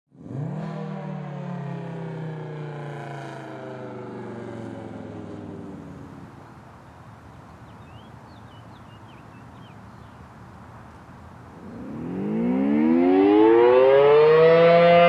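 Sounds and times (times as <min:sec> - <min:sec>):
outdoor warning siren: 0:00.2 - 0:06.0, 0:11.5 - 0:15.0.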